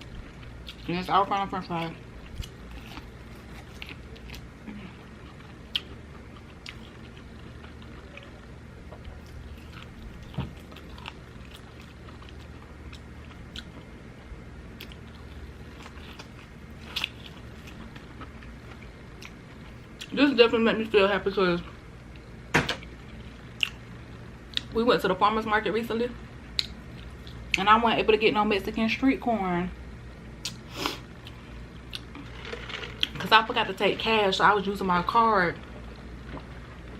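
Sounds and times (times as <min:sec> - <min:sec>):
person chewing: 0:02.1 - 0:13.9, 0:14.7 - 0:20.1, 0:23.1 - 0:23.9, 0:30.4 - 0:33.2.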